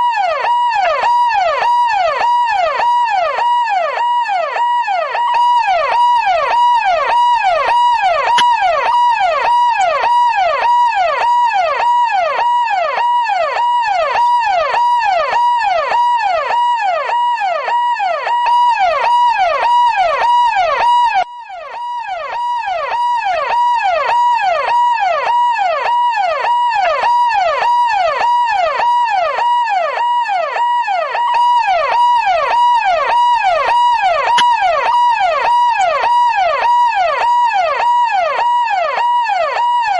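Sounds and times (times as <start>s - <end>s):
police car siren wailing: 0.0s - 39.9s.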